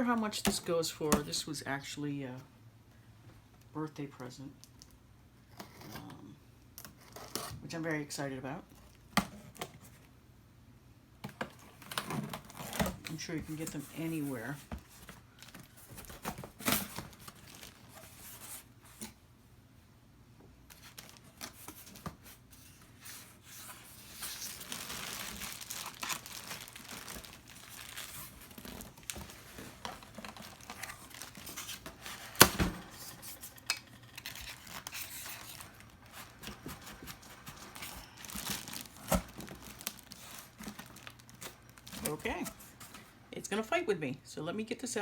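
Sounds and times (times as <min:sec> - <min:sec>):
packaging rustling and crinkling: 0:11.3 - 0:19.2, 0:20.7 - 0:43.2.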